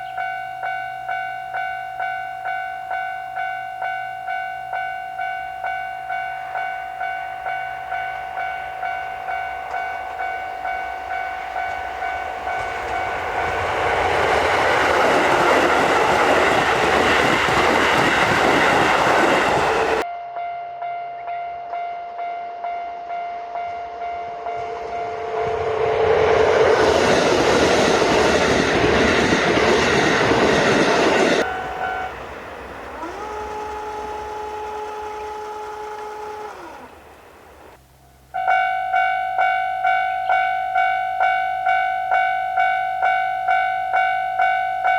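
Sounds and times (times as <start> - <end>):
crossing warning bell: 0.0 - 37.7, 38.3 - 44.9
train wheels rumbling on rail: 5.6 - 20.0, 23.7 - 37.8.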